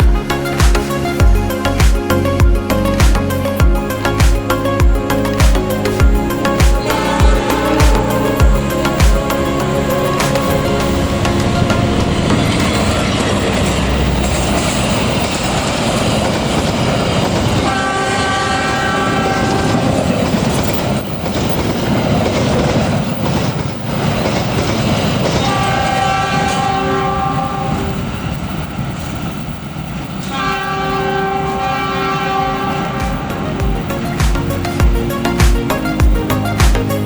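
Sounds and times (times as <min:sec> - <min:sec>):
train wheels rumbling and clattering: 0:00.0 - 0:37.0
locomotive horn blasts: 0:06.5 - 0:13.1, 0:17.6 - 0:19.9, 0:25.4 - 0:28.0, 0:30.3 - 0:33.6.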